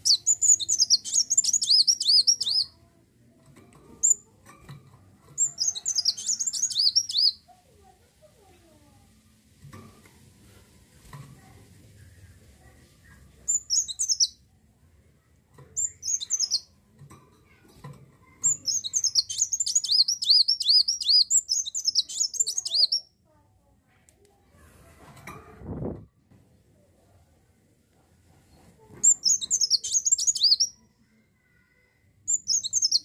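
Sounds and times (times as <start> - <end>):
sunbird singing high twittering: 0.0 - 2.7, 5.4 - 7.4, 13.5 - 14.4, 15.8 - 16.7, 18.5 - 23.1, 29.0 - 30.8, 32.3 - 33.0.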